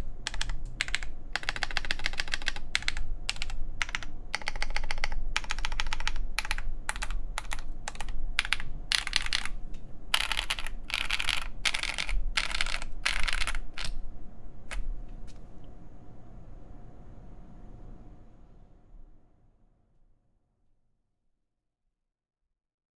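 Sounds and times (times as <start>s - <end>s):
mechanical keyboard typing: 0.0s - 14.0s, 14.7s - 15.4s.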